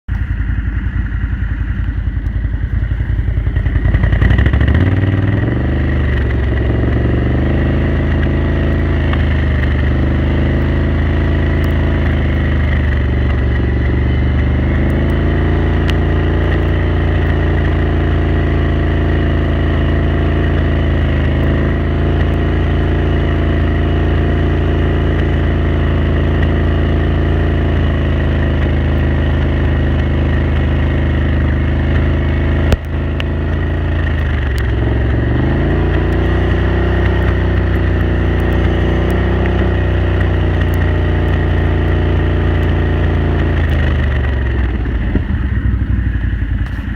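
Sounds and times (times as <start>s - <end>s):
atv engine revving: 0.1s - 46.9s
engine misfire pops: 46.6s - 46.9s.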